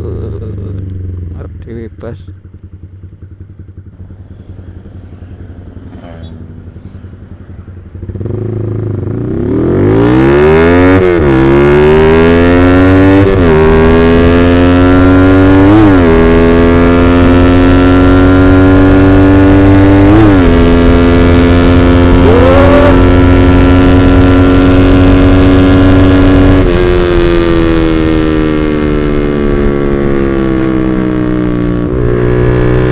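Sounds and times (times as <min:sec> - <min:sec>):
motorcycle accelerating through gears: 0:02.4 - 0:32.9.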